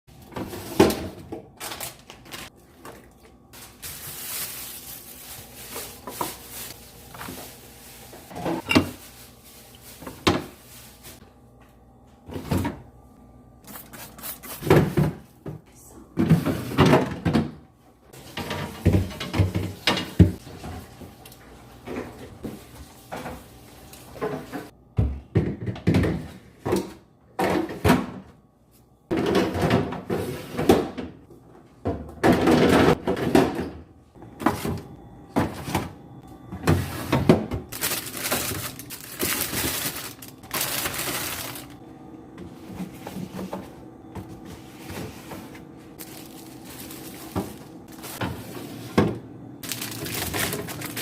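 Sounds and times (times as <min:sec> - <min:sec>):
refrigerator drawers clunking and rattling: 0:00.1 - 0:03.1, 0:08.2 - 0:09.0, 0:12.2 - 0:13.0, 0:14.6 - 0:21.1, 0:21.7 - 0:28.4, 0:29.1 - 0:41.8, 0:42.4 - 0:51.0.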